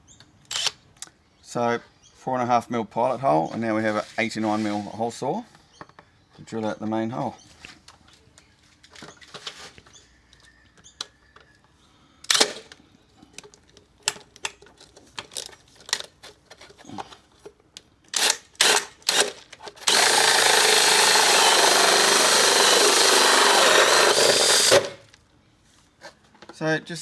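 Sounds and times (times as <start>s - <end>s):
power tool cutting plastic: 18.2s - 25.1s.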